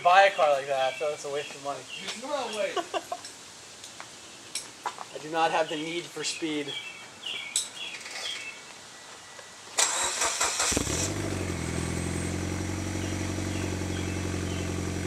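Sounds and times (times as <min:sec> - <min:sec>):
starter cranking engine: 0:09.8 - 0:14.7
car engine idling: 0:09.9 - 0:15.0.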